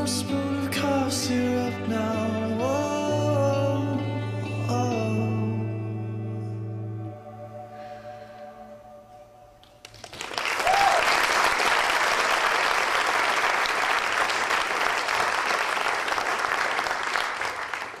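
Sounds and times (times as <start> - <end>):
audience applause: 9.8 - 18.0
person whooping: 10.6 - 11.3.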